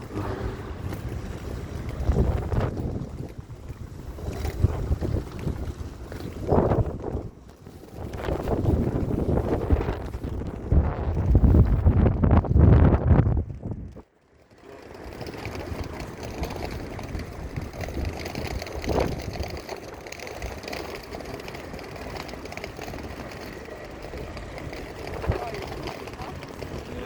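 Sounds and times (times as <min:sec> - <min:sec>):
distant traffic: 0:00.0 - 0:04.3, 0:14.8 - 0:27.0
wind buffeting microphone: 0:00.0 - 0:14.0, 0:15.0 - 0:27.0.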